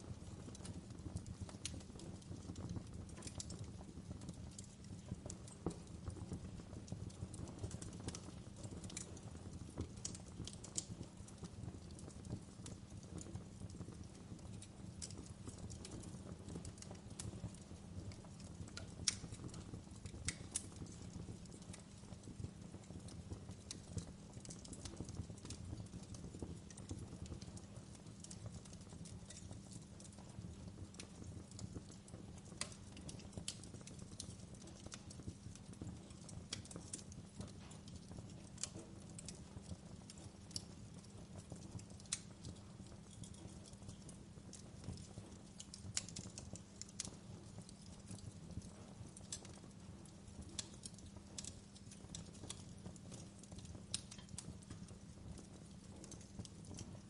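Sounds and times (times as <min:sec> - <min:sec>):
low fire rumble: 0:00.0 - 0:57.0
wood fire crackling: 0:00.0 - 0:57.0.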